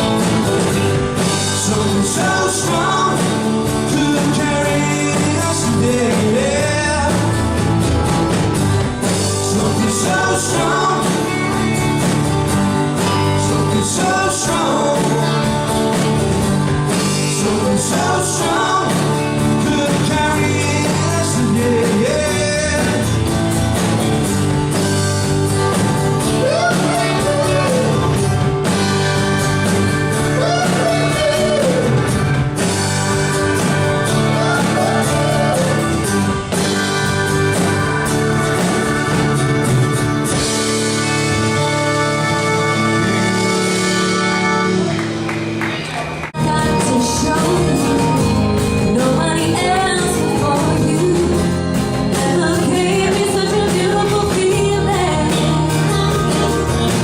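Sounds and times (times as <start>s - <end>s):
live rock band playing: 0.0s - 57.0s
person singing: 1.2s - 7.4s, 9.2s - 12.0s, 13.1s - 15.9s, 16.9s - 23.2s, 26.2s - 28.7s, 30.0s - 32.2s, 34.0s - 36.4s, 46.4s - 57.0s.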